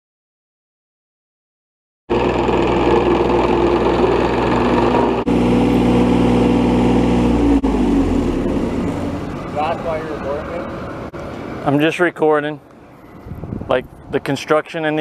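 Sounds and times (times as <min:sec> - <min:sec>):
heavy machinery engine running: 0:02.1 - 0:11.2.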